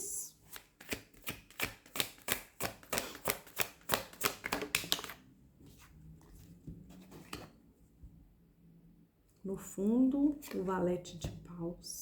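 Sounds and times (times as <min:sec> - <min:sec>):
cards being shuffled: 0:00.5 - 0:05.2.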